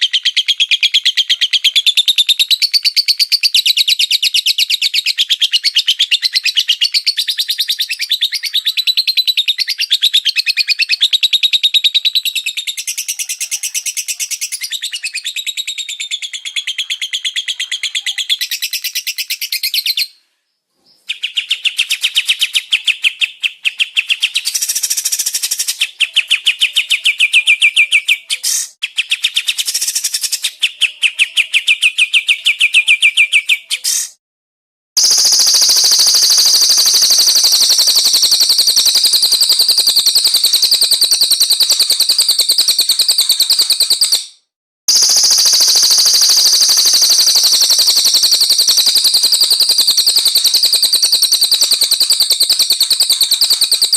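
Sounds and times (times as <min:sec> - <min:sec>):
songbird chattering song: 0:00.0 - 0:20.2, 0:20.8 - 0:34.1.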